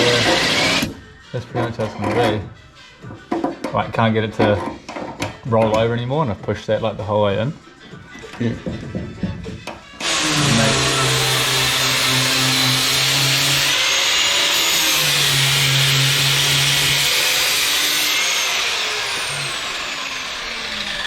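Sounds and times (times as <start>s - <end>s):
electric drill running: 0.0s - 0.9s, 10.0s - 21.0s.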